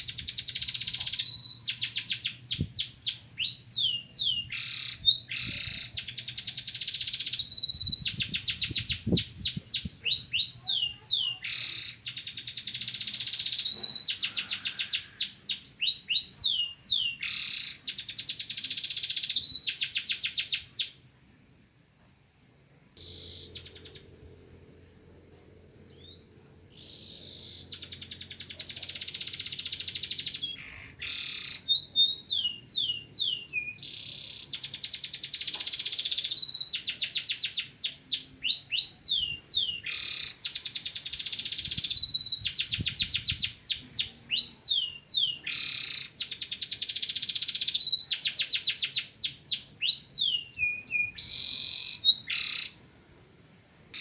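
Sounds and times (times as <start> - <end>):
canary singing: 0.0 - 21.0, 23.0 - 24.2, 25.9 - 52.8.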